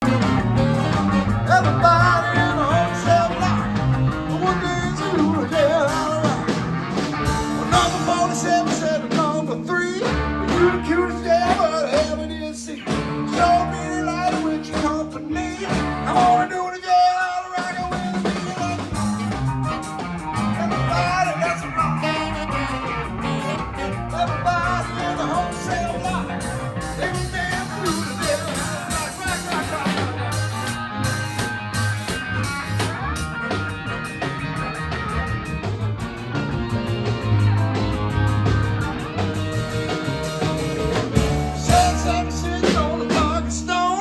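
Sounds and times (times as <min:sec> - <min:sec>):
electric guitar: 0:00.0 - 0:44.0
person singing: 0:00.1 - 0:06.7, 0:07.5 - 0:34.2, 0:41.2 - 0:44.0.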